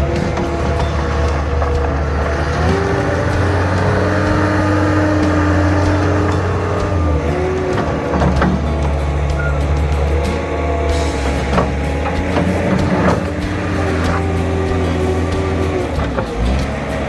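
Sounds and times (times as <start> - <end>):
diesel engine revving: 0.0 - 17.0.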